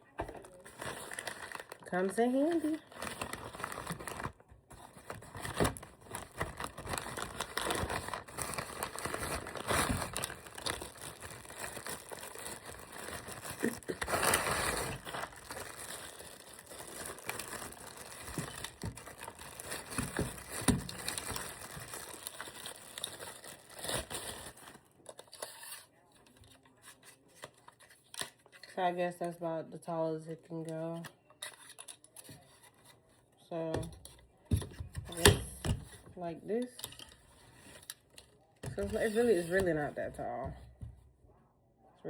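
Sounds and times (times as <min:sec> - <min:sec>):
plastic packaging crinkling: 0:00.1 - 0:25.8.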